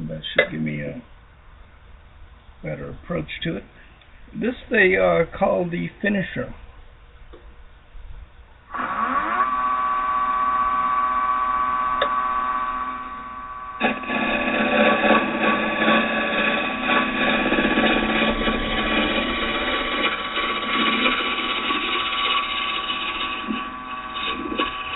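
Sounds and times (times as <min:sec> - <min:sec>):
lathe tool scraping wood: 0:08.7 - 0:24.9
wood lathe motor whine: 0:08.7 - 0:24.9.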